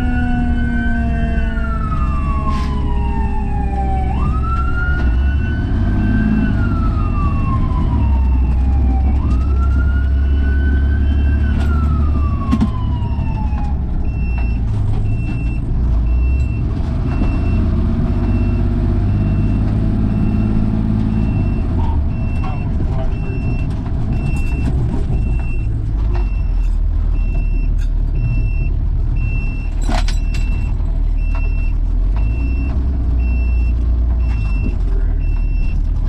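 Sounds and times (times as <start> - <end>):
fire truck siren wailing: 0.0 - 27.6
truck engine rumble: 0.0 - 36.0
reversing alarm beeps: 14.0 - 35.9.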